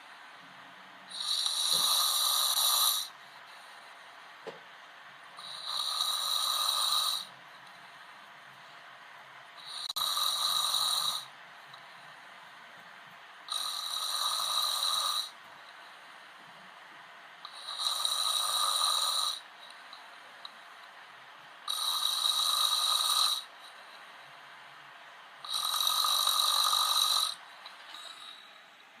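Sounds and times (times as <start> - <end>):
man snoring: 1.1 - 3.2, 5.4 - 7.3, 9.6 - 11.4, 13.5 - 15.4, 17.5 - 19.5, 21.7 - 23.6, 25.4 - 28.5.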